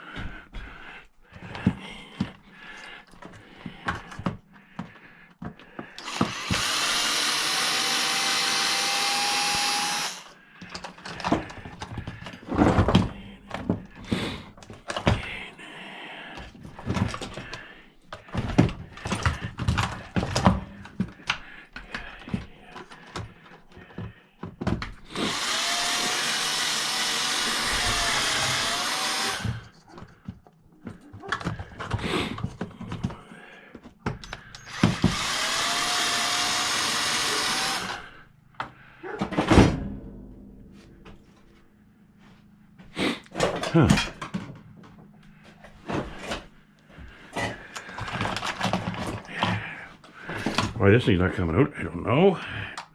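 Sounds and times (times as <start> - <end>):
cordless drill motor running: 6.0 - 10.4, 25.1 - 29.7, 34.4 - 38.2
clicks and knocks of handling: 43.3 - 49.6.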